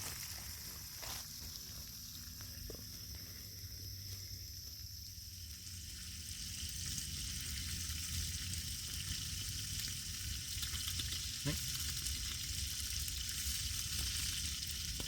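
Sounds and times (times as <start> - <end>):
fish frying in a pan: 4.4 - 15.0.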